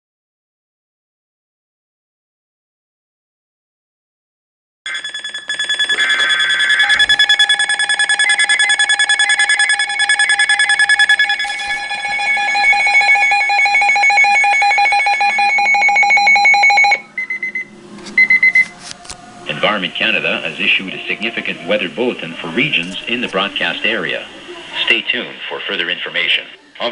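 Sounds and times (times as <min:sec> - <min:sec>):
rapid electronic alert beeping: 0:04.9 - 0:18.7.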